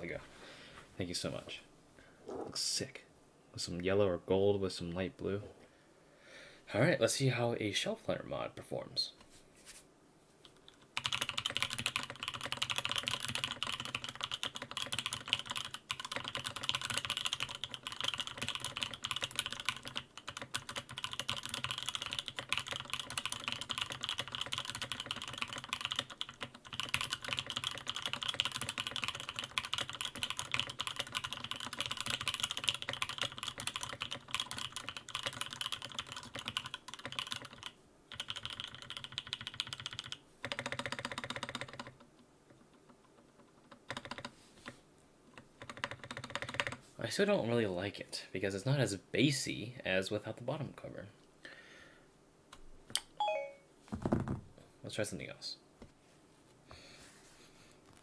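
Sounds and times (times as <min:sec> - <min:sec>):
mechanical keyboard typing: 0:10.7 - 0:42.1, 0:43.0 - 0:44.3, 0:45.6 - 0:46.8.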